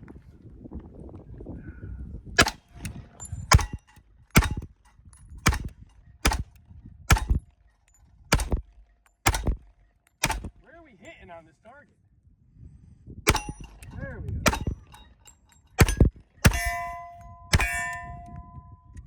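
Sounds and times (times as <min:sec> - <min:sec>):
pistol shots: 0:02.4 - 0:04.7, 0:05.4 - 0:07.5, 0:08.3 - 0:10.6, 0:13.3 - 0:14.9, 0:15.8 - 0:18.0.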